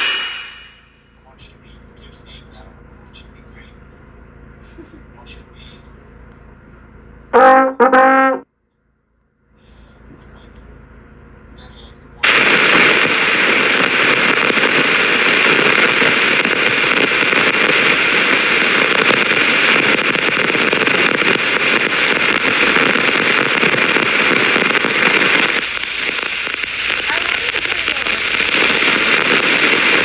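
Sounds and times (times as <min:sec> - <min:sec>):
loud dense crackling: 0:12.2 - 0:30.0.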